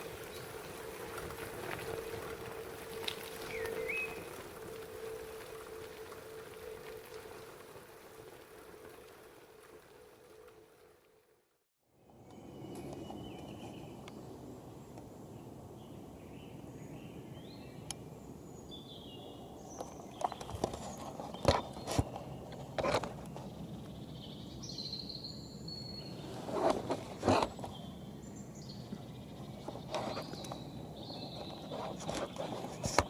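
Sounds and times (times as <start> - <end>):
crackling rustles in dry leaves: 0.0 - 11.5
small birds chirping: 3.2 - 4.4, 27.4 - 33.0.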